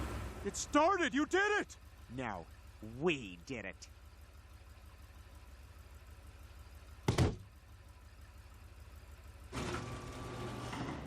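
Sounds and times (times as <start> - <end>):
car engine idling: 0.0 - 10.3
loud thunk: 7.1 - 7.5.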